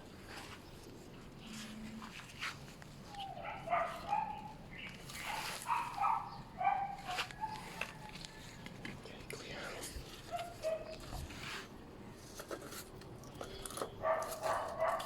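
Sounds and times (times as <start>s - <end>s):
dog yelping: 3.2s - 4.6s, 5.3s - 8.1s, 10.3s - 11.0s, 14.0s - 15.0s.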